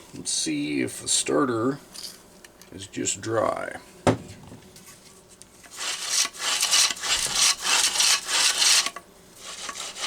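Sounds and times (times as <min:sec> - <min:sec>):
starter rope rasping: 0:05.7 - 0:10.0.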